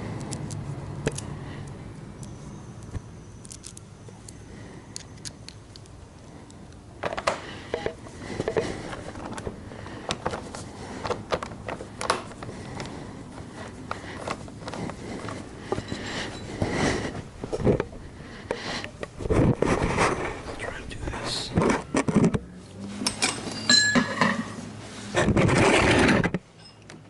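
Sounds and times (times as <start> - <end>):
metal parts and tools clinking: 3.3 - 4.4, 21.8 - 24.6, 26.5 - 27.0.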